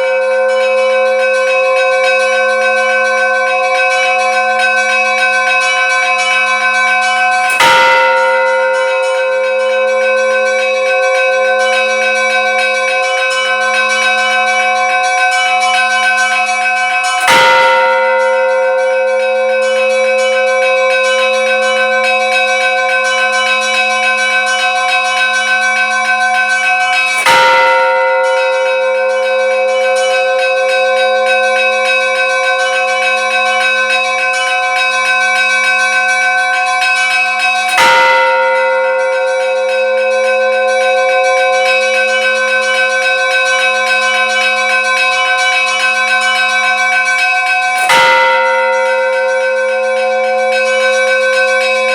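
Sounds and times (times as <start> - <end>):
bell ringing: 44.1 - 51.9.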